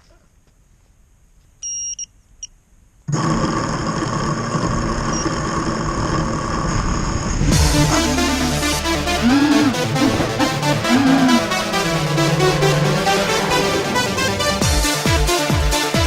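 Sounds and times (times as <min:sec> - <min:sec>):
propeller motors whining: 0:04.2 - 0:15.5.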